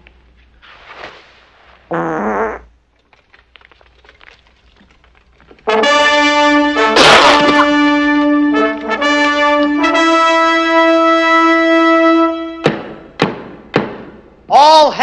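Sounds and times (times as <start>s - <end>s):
brass fanfare: 5.7s - 12.6s.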